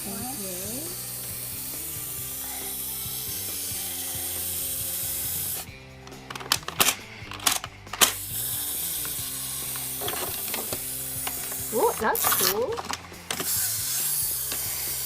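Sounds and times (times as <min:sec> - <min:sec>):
background music: 0:00.0 - 0:15.0
plastic toy pieces clicking together: 0:06.1 - 0:14.7.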